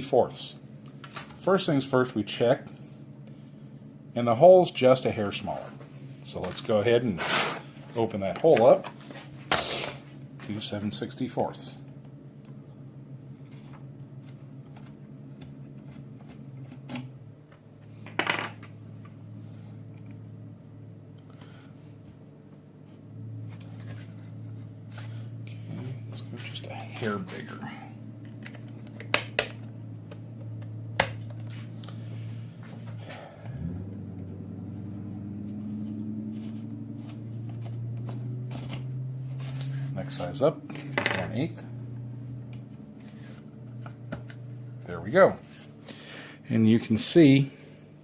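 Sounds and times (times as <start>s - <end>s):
low motor hum: 10.1s - 48.0s.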